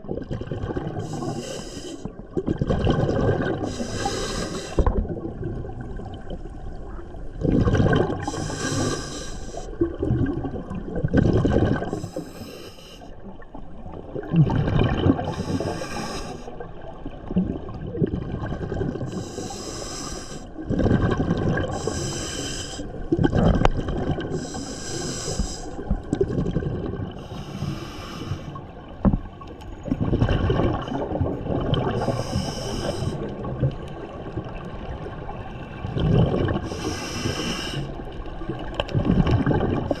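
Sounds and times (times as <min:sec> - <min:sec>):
hissing regulator inhalations: 0:01.0 - 0:02.1, 0:03.6 - 0:04.9, 0:08.2 - 0:09.7, 0:12.0 - 0:13.1, 0:15.3 - 0:16.5, 0:19.1 - 0:20.5, 0:21.7 - 0:22.9, 0:24.4 - 0:25.8, 0:27.2 - 0:28.6, 0:32.0 - 0:33.3, 0:36.6 - 0:37.9
bubbling exhalations: 0:02.4 - 0:06.3, 0:07.4 - 0:09.0, 0:09.8 - 0:12.2, 0:14.2 - 0:16.4, 0:20.6 - 0:28.0, 0:35.8 - 0:37.5.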